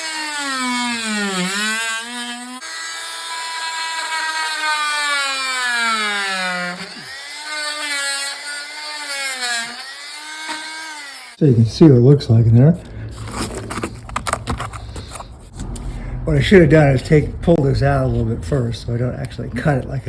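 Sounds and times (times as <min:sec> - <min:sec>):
oscillating multi-tool cutting wood: 0:00.0 - 0:11.4.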